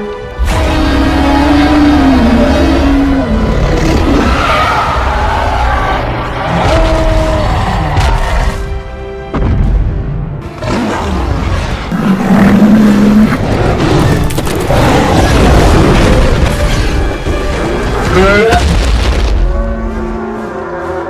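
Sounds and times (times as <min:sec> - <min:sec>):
dramatic music: 0:00.0 - 0:21.0
deep booming rumbles and crashes: 0:13.5 - 0:19.7.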